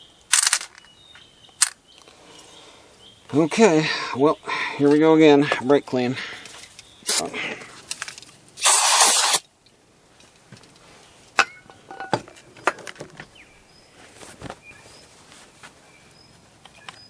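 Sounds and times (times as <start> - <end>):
tools and metal parts clicking: 0.3 - 0.9.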